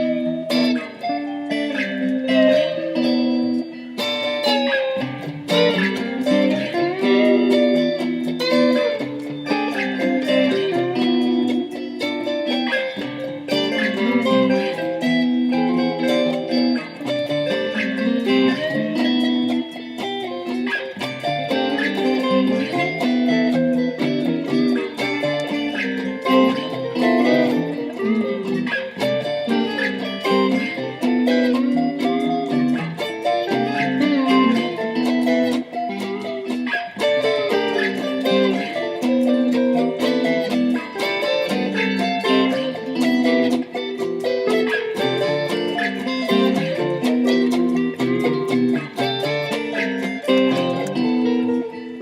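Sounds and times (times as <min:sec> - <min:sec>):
fast guitar single notes: 0:00.0 - 0:52.0.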